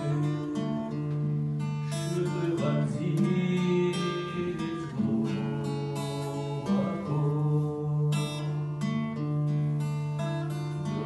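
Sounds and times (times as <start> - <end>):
strummed acoustic guitar: 0.0 - 11.0
person singing: 1.8 - 8.7.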